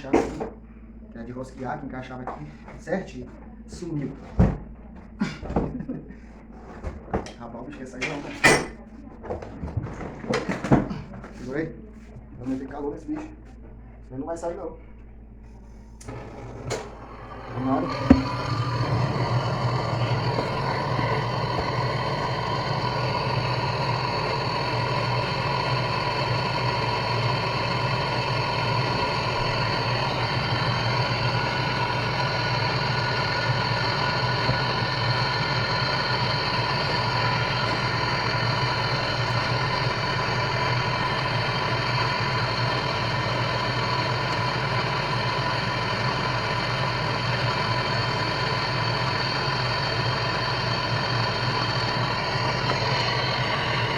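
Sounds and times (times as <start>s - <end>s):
heat gun fan whining: 16.0s - 53.9s.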